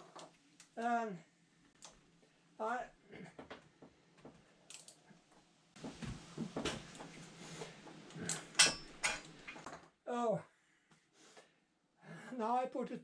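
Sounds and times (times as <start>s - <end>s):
hand tools clattering: 8.2s - 9.6s.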